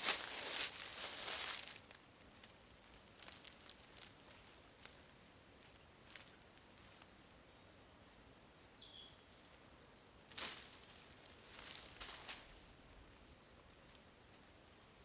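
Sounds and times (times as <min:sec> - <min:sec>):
bird chirp: 0:08.7 - 0:09.3.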